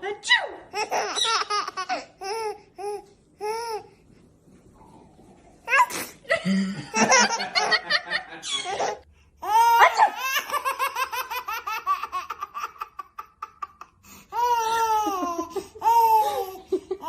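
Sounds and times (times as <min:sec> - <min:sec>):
baby laughing: 0:00.7 - 0:03.8, 0:07.0 - 0:17.0.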